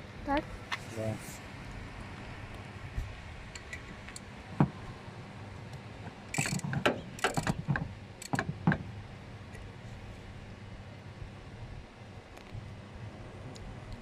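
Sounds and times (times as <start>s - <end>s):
ratchet wrench clicking: 6.3s - 6.6s, 7.2s - 7.5s, 8.2s - 8.5s.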